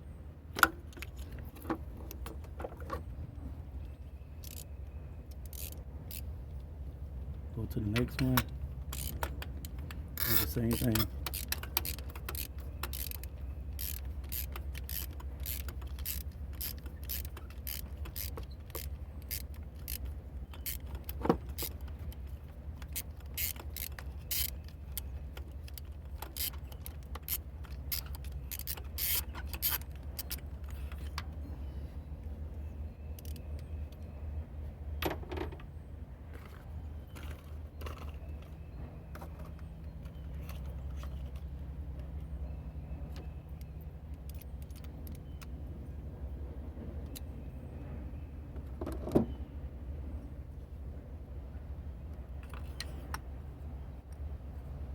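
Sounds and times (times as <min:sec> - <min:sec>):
steady low hum: 0:00.0 - 0:54.9
ratchet clicking: 0:04.4 - 0:04.7, 0:05.3 - 0:06.2, 0:07.9 - 0:31.0.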